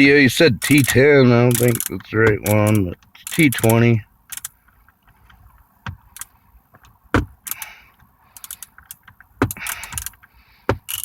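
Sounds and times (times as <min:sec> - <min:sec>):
hand tools clicking: 0:00.6 - 0:03.8, 0:08.4 - 0:11.0.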